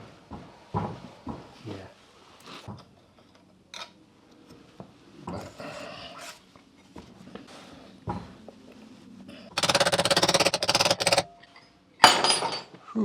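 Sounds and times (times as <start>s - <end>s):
metal tools clicking and knocking: 9.6s - 12.8s.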